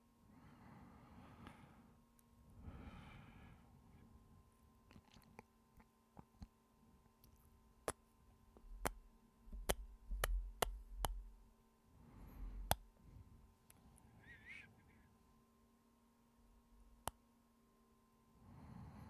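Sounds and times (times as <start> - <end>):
breath: 0.3 - 4.0, 18.4 - 19.0.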